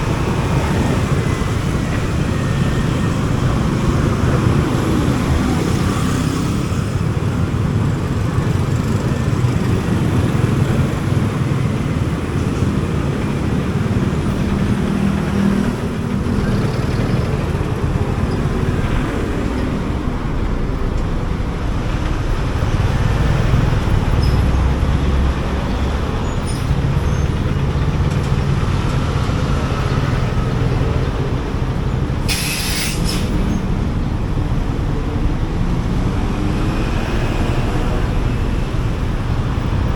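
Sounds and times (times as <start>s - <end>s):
road and wind noise: 0.0s - 39.9s
surrounding vehicles: 0.0s - 39.9s
brief hiss: 32.3s - 33.3s.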